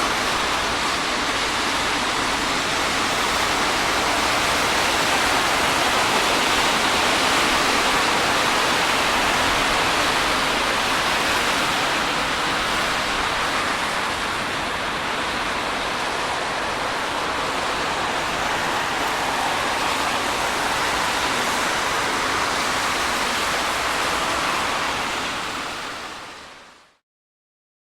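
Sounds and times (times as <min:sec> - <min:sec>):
rain and tyre spray hiss: 0:00.0 - 0:26.9.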